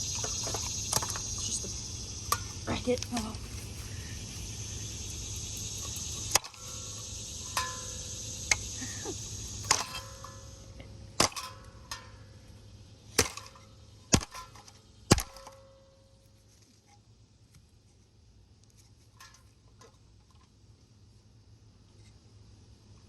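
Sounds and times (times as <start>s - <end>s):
steady hum: 0.0s - 17.8s.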